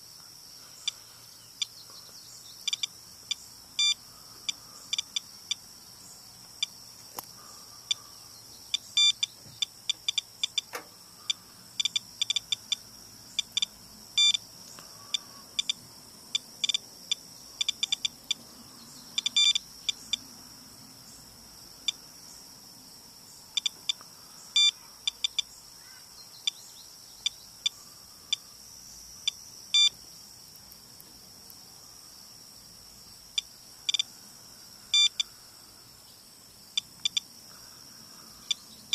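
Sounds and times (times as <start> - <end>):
geiger counter chirping: 2.6 - 5.6, 8.7 - 12.8, 13.4 - 14.4, 15.1 - 15.8, 16.4 - 18.4, 19.2 - 20.2, 23.5 - 25.5, 29.2 - 30.0, 34.9 - 35.3, 36.8 - 37.3.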